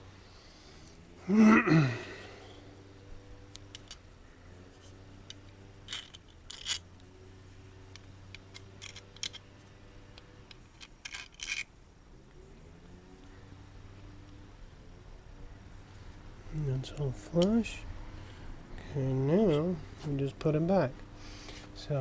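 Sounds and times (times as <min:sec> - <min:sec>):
person grunting: 0:01.2 - 0:02.5.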